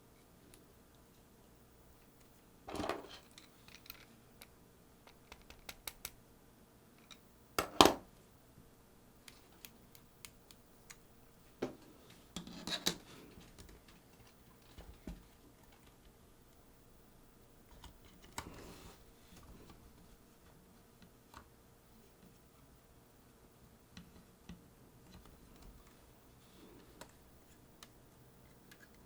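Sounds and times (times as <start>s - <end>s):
clicks and taps of small parts: 3.3s - 6.2s.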